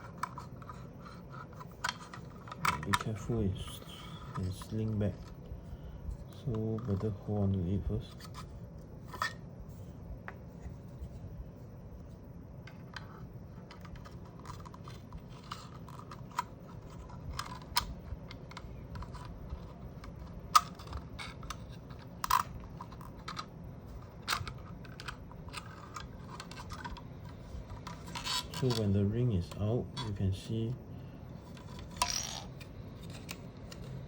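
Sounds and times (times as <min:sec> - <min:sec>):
plastic parts clicking: 0:00.0 - 0:05.4, 0:12.6 - 0:30.2, 0:31.4 - 0:34.0
low hum: 0:00.0 - 0:34.0.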